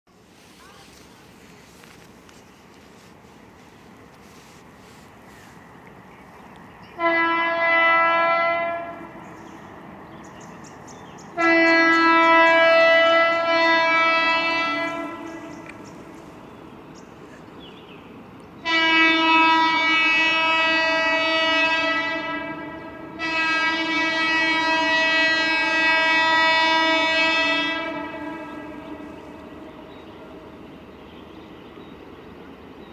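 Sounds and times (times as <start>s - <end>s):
train horn blasts: 6.9s - 9.3s, 11.3s - 15.8s, 18.6s - 30.5s.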